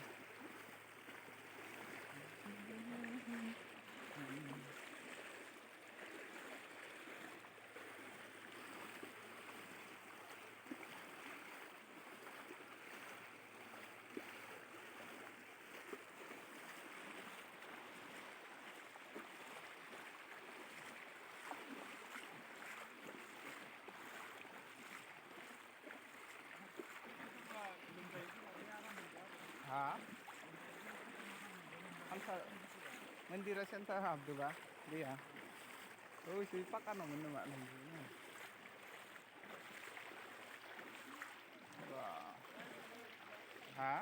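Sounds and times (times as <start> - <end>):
faint water splashes: 0.0 - 44.0
floodwater rushing: 0.0 - 44.0.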